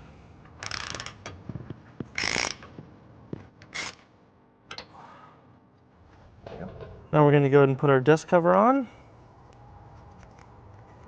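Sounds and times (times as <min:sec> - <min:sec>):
ratchet wrench clicking: 0:00.6 - 0:01.2, 0:02.2 - 0:02.6.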